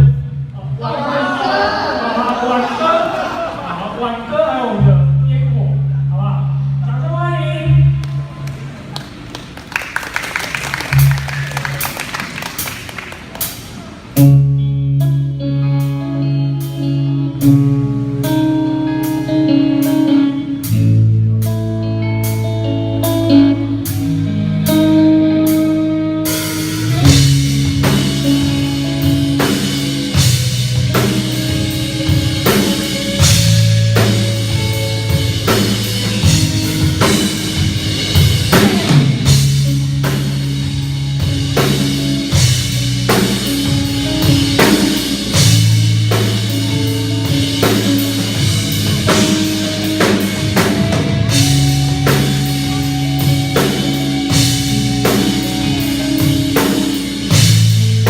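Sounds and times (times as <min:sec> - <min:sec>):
bass guitar notes: 0:00.0 - 0:58.0
electric guitar: 0:07.7 - 0:58.0
drum kit beat: 0:09.1 - 0:14.4, 0:26.3 - 0:58.0.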